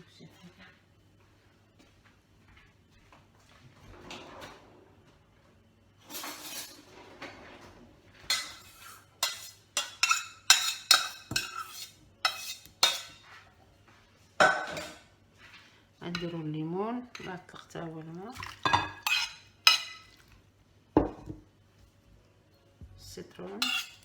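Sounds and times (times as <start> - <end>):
dishes and spoon clinking: 8.2 - 13.4, 14.4 - 15.1, 18.4 - 20.3, 23.6 - 24.0.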